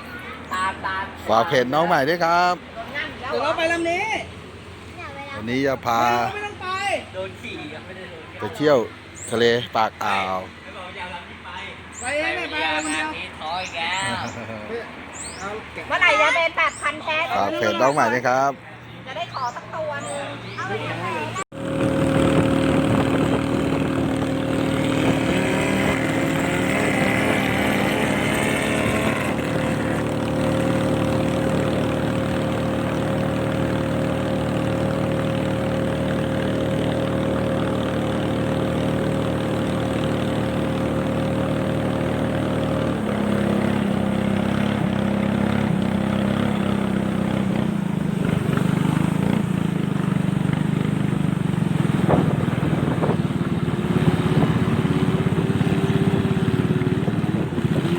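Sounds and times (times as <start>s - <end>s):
motorboat engine running: 21.0s - 57.9s.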